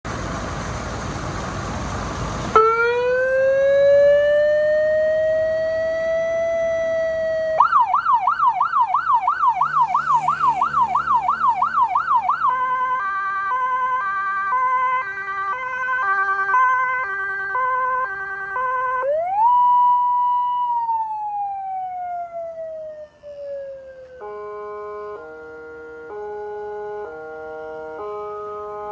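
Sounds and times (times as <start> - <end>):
electronic siren: 2.6 - 28.9
rushing noise: 8.9 - 12.7.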